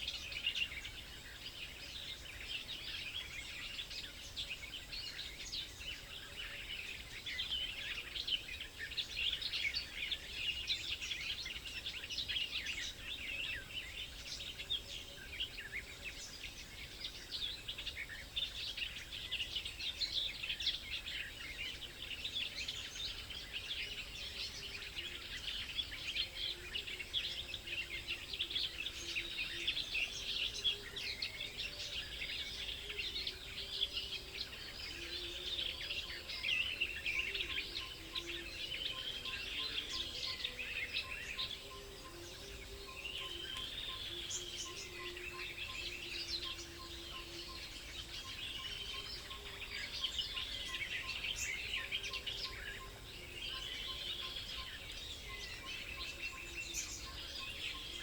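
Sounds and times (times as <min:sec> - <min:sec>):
songbirds chirping: 0:00.0 - 0:58.0.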